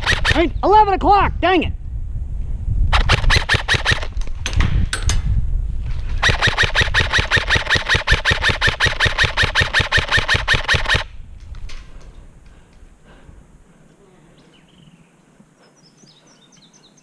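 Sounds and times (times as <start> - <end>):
airsoft rifle automatic fire: 0.0 - 0.4, 2.9 - 4.1, 6.2 - 11.1.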